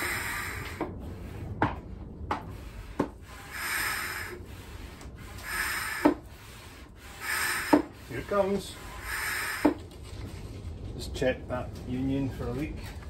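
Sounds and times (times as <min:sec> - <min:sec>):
hand pump hissing air: 0:00.0 - 0:01.4, 0:02.5 - 0:09.8
pump knocking: 0:05.4 - 0:06.3, 0:07.2 - 0:08.1.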